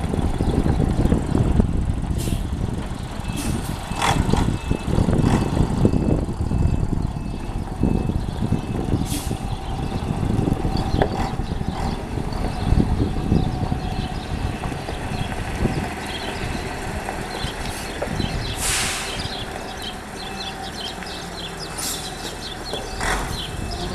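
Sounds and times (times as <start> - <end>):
bus diesel engine rumbling: 0.0 - 23.9
air brake hisses: 18.6 - 19.2, 21.8 - 22.1.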